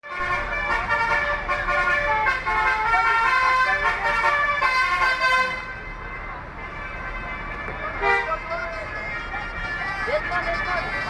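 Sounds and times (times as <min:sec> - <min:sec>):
multi-tone air horn melody: 0:00.1 - 0:05.9, 0:06.6 - 0:08.8.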